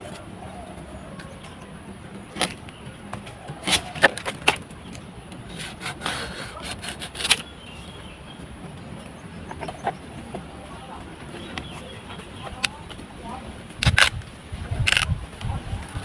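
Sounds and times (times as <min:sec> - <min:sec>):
knife scraping and cutting wood: 0:03.5 - 0:04.6, 0:05.5 - 0:07.5.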